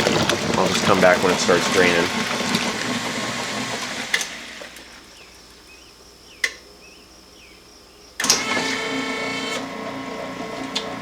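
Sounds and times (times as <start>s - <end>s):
drain pump running loudly: 0.0s - 5.4s, 8.2s - 11.0s
washing machine running: 0.0s - 5.4s, 8.2s - 11.0s.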